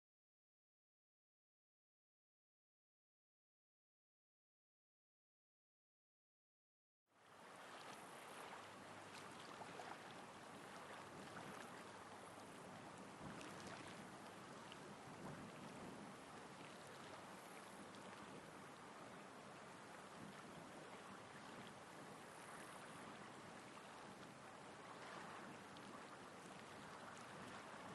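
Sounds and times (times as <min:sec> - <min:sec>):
light wind: 0:07.2 - 0:27.9
ocean waves rolling in: 0:07.2 - 0:27.9.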